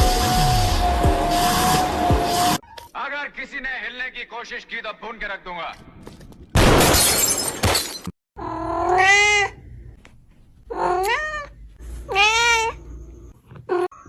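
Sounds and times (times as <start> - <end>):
loud noisy burst: 0.0 - 2.6
cat meowing: 8.4 - 9.6, 10.7 - 12.8.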